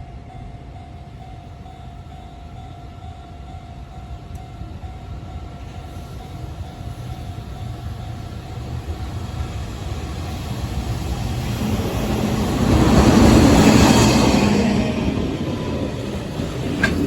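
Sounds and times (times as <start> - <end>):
freight train approaching: 0.0 - 17.0.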